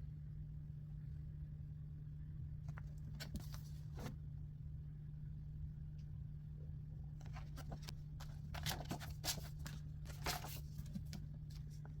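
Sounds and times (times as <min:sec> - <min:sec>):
steady low hum: 0:00.0 - 0:12.0
paper rustling and crackling: 0:02.7 - 0:04.1, 0:07.2 - 0:12.0.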